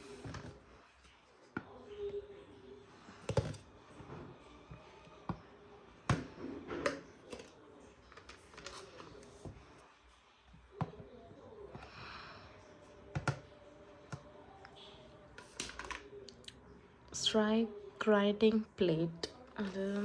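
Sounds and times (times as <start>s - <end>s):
plastic parts being handled: 6.1s - 9.6s, 15.3s - 16.1s.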